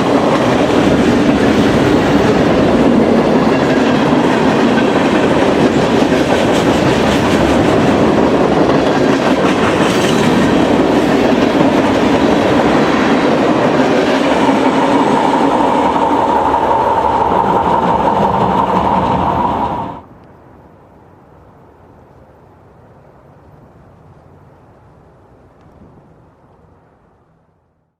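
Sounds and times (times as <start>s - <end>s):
train wheels clickety-clack: 0.0s - 20.0s
low hiss: 0.0s - 27.9s.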